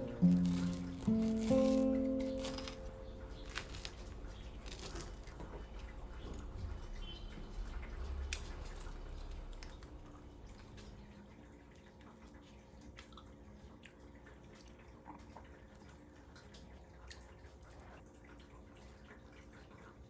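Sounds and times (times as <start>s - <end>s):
background music: 0.0s - 4.0s
light rustling and crinkling: 0.0s - 10.0s
low steady hum: 0.0s - 19.8s.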